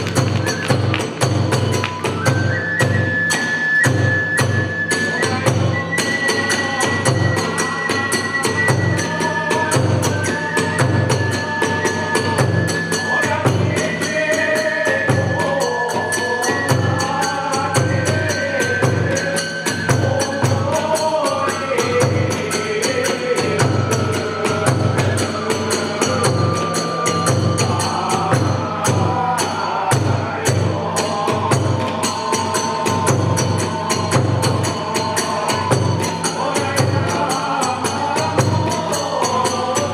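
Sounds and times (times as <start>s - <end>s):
large drum beating: 0.0s - 3.0s
bamboo flute held notes: 0.0s - 13.6s.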